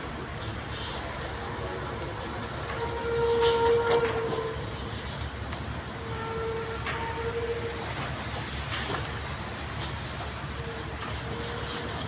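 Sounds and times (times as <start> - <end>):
horn blasts: 2.7 - 4.7, 6.0 - 7.8.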